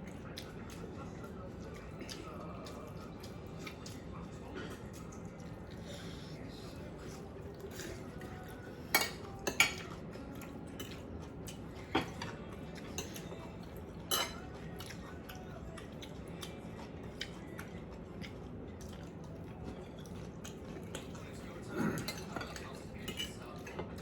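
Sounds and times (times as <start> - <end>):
eating sounds: 0.0 - 24.0
cutlery clinking on a plate: 8.9 - 10.0, 10.8 - 11.0, 11.8 - 13.4, 14.0 - 15.0, 22.0 - 24.0.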